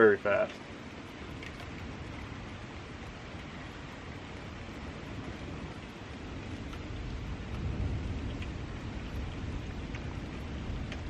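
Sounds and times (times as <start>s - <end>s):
deep thunder rumble: 0.7s - 11.0s.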